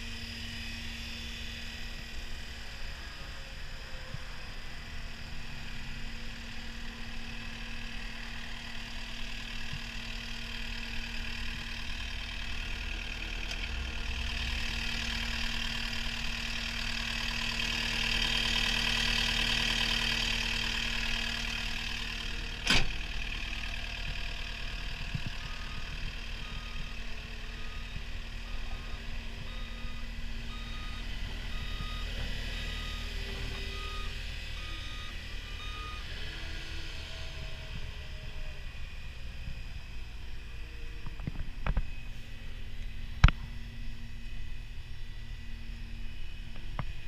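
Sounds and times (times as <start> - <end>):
diesel engine idling: 0.0 - 47.0.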